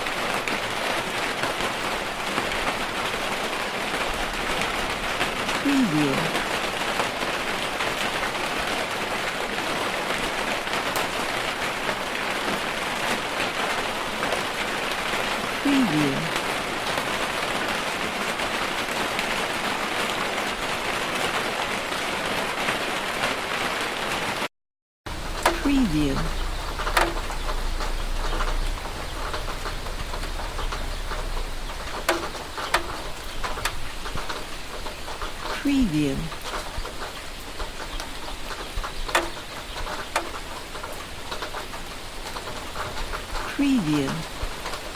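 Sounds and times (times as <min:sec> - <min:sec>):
raindrops ticking on surfaces: 0:00.0 - 0:24.5, 0:25.1 - 0:44.9
steady rain falling: 0:00.0 - 0:24.5, 0:25.1 - 0:44.9
rain drop taps: 0:25.1 - 0:35.6, 0:36.2 - 0:44.9.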